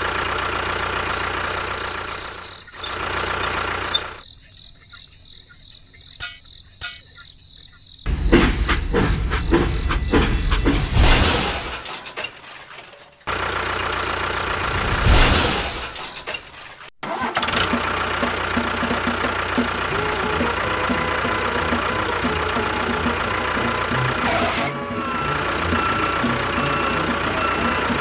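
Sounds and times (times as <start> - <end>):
engine humming steadily: 0.0 - 11.1, 13.3 - 14.8, 17.5 - 28.0.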